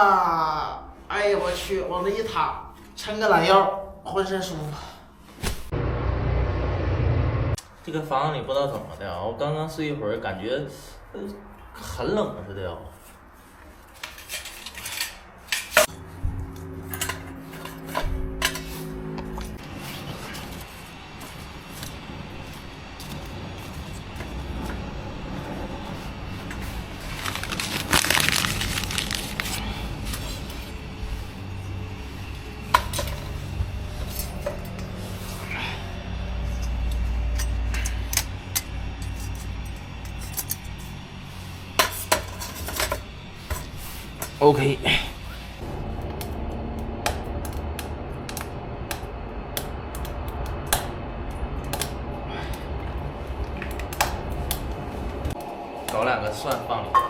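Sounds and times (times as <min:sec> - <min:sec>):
low steady rumble: 0:00.8 - 0:07.6, 0:15.9 - 0:44.2, 0:45.0 - 0:56.9
crinkling rustle: 0:26.6 - 0:30.4.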